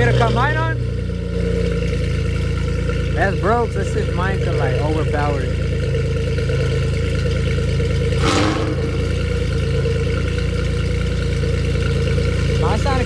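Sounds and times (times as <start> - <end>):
loud car engine idling: 0.0 - 13.0
sharp burst of exhaust noise: 8.2 - 10.3.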